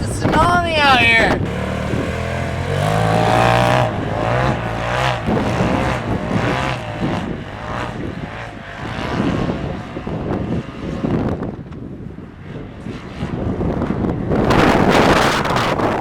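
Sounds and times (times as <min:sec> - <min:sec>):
off-road vehicle engine revving: 0:00.0 - 0:16.0.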